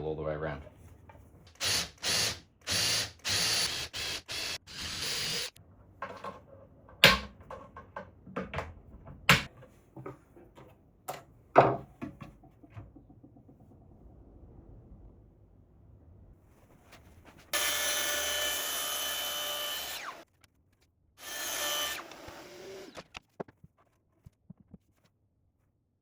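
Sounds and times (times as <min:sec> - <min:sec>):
power drill running: 0:01.6 - 0:05.5, 0:17.6 - 0:20.2, 0:21.2 - 0:23.1
knocks and clicks handling wood: 0:06.0 - 0:13.8.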